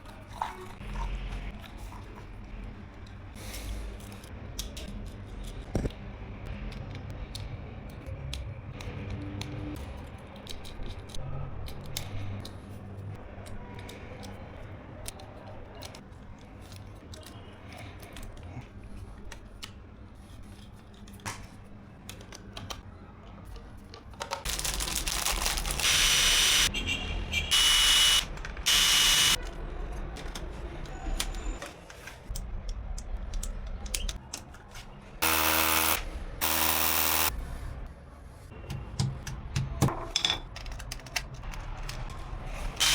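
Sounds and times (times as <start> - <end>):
small electric power tool: 25.8 - 26.7, 27.5 - 29.4, 35.2 - 37.3
clicks of small parts handled: 40.1 - 42.1.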